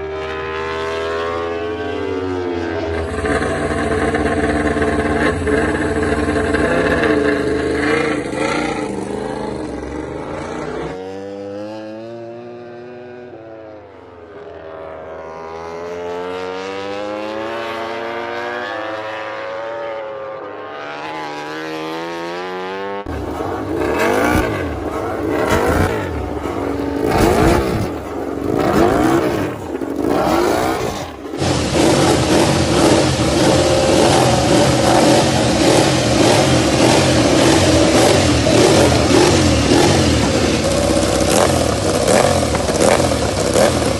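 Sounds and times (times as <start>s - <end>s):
motorcycles passing by: 0.0s - 43.9s
race motorcycle engines revving: 0.0s - 43.9s.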